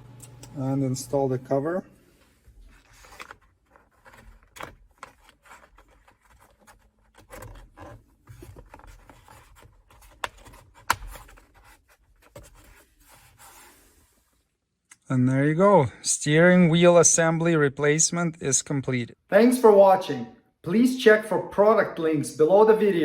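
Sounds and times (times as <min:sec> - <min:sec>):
plastic scraping and rubbing: 0:02.6 - 0:14.0.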